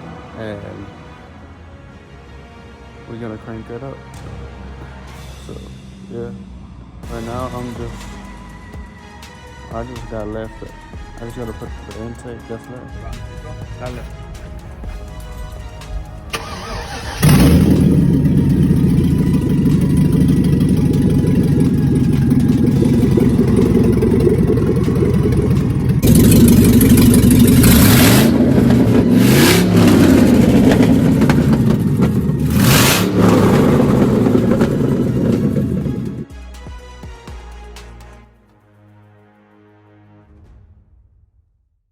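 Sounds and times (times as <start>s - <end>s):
car engine starting and revving: 13.1s - 36.3s.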